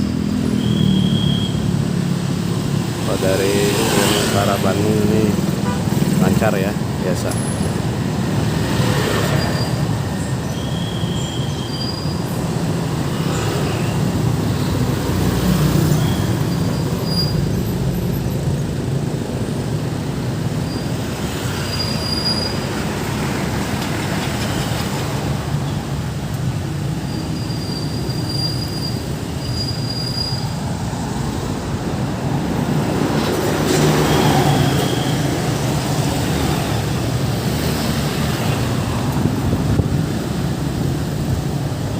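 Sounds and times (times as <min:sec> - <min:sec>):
road traffic rumble: 0:00.0 - 0:41.9
brief high squeaks: 0:09.2 - 0:09.8, 0:10.5 - 0:12.2, 0:15.9 - 0:17.5, 0:27.1 - 0:30.5, 0:33.7 - 0:35.3.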